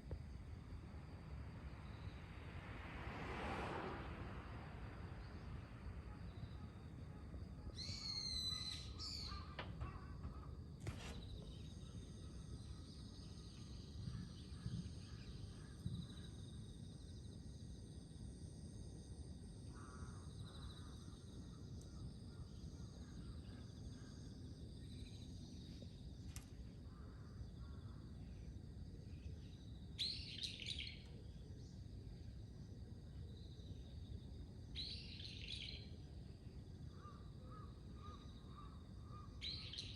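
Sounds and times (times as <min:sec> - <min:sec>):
starlings calling: 0:07.8 - 0:11.7.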